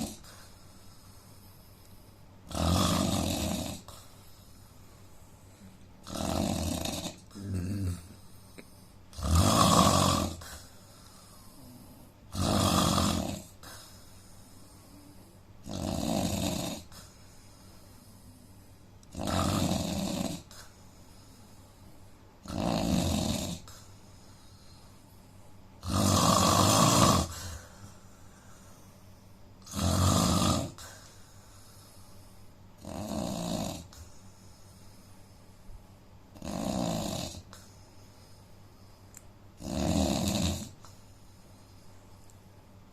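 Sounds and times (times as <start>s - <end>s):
man snoring: 0.0s - 0.3s, 2.5s - 4.0s, 6.0s - 8.2s, 9.1s - 10.6s, 11.5s - 13.8s, 15.0s - 17.0s, 19.1s - 20.7s, 22.4s - 23.8s, 25.8s - 27.7s, 29.6s - 31.0s, 32.8s - 34.0s, 36.4s - 37.6s, 39.6s - 40.8s.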